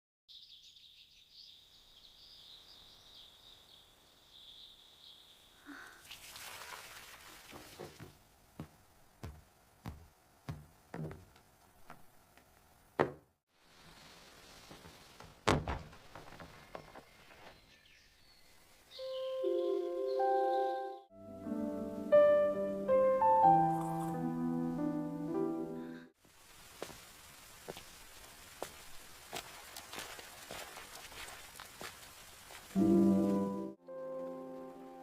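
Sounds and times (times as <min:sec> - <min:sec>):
knocks and thunks: 0:07.8 - 0:12.0, 0:13.0 - 0:13.3, 0:14.7 - 0:17.0
loud thuds: 0:14.7 - 0:17.0.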